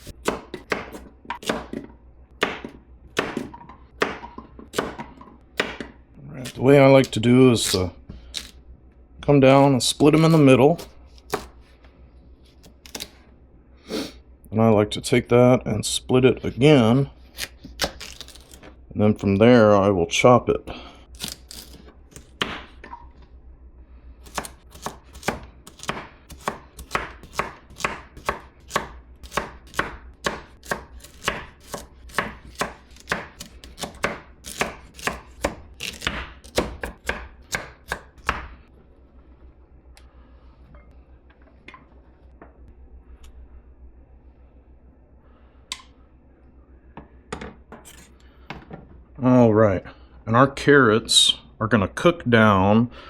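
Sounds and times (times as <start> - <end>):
knife chopping on cutting board: 0.0 - 7.8, 10.2 - 11.5, 22.2 - 22.9, 24.3 - 38.6.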